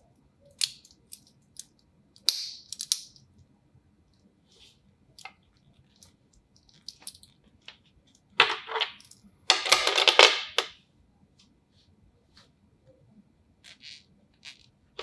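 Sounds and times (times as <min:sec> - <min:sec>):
metal bracelet clinking and rattling: 0:05.9 - 0:07.4.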